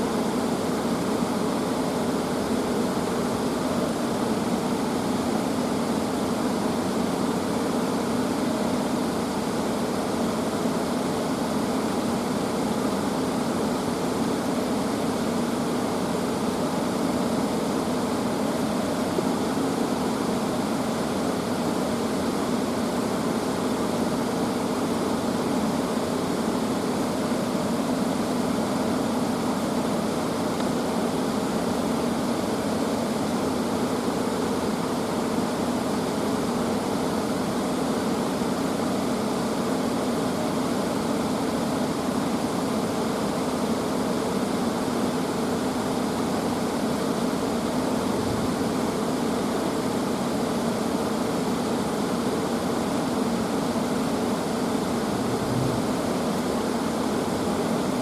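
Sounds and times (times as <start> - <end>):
steady rushing noise: 55.0 - 57.6.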